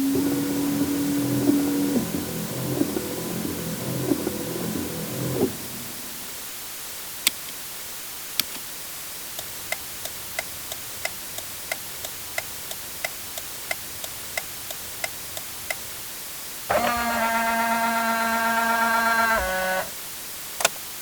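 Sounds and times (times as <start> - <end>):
turn-signal flasher ticking: 9.4 - 16.1, 16.7 - 19.9.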